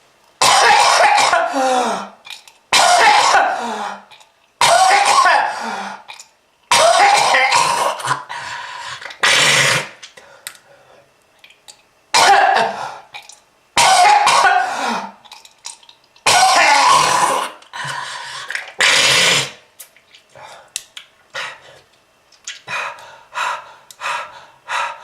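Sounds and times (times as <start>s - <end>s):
person coughing harshly: 0.4s - 4.0s, 4.6s - 5.8s, 6.7s - 8.3s, 9.2s - 9.9s, 12.1s - 13.0s, 13.8s - 15.2s, 16.3s - 17.6s.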